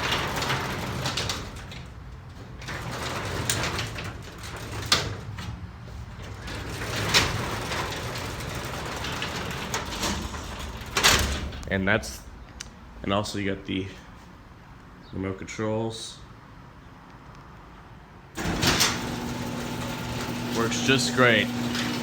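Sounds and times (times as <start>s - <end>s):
garage door clunks: 0.0s - 11.8s, 18.4s - 22.0s
garage door rolling rumble: 0.0s - 12.4s, 18.4s - 22.0s.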